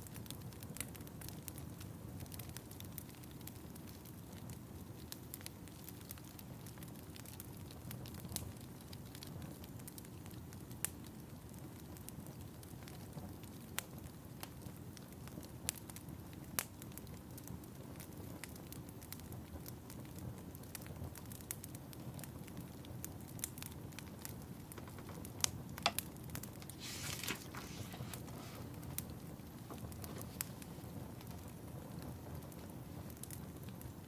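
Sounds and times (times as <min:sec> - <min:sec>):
fire crackling and popping: 0:00.0 - 0:34.0
brief rustling hiss: 0:26.6 - 0:28.7.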